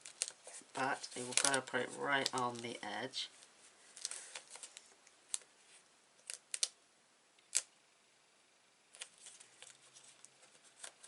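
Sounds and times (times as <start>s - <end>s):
faint paper rustling: 0.0s - 6.4s, 8.9s - 11.0s.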